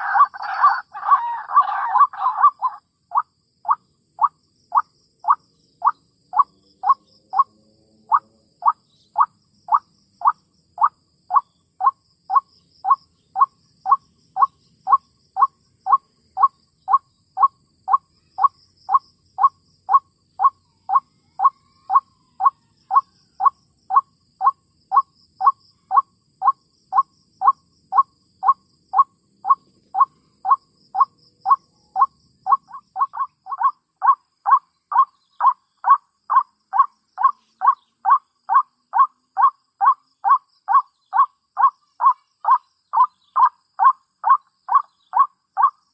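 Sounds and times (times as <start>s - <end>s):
waterhen calls: 0.0s - 5.4s, 29.5s - 45.8s.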